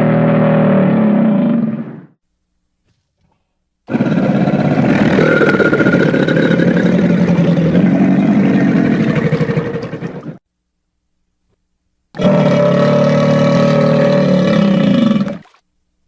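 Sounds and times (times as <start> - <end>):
crocodile pulsing growl: 3.9 - 10.4, 12.2 - 15.6.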